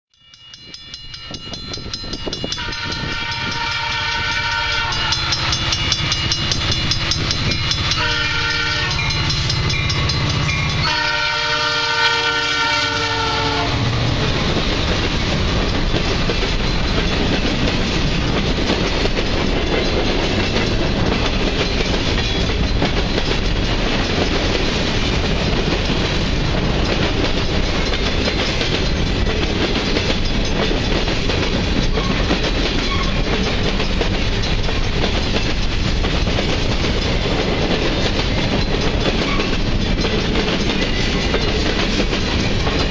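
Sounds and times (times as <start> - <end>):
freight train rumbling past: 0.4 - 42.9
locomotive horn blasts: 2.6 - 5.4, 7.9 - 9.3, 10.7 - 13.9
wheels clicking over rail joints: 14.0 - 42.9.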